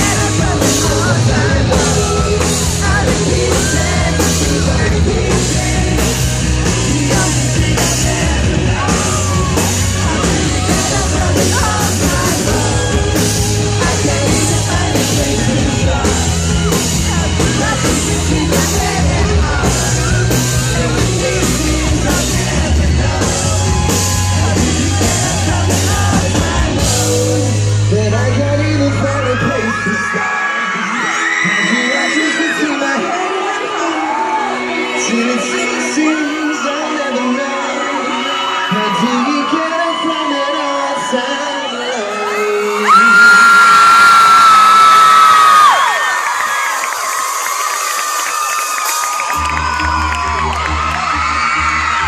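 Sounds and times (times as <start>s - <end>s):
drum beat: 0.0s - 27.5s
person singing: 0.0s - 43.7s
crowd yelling: 0.0s - 52.0s
live pop band playing: 0.0s - 52.0s.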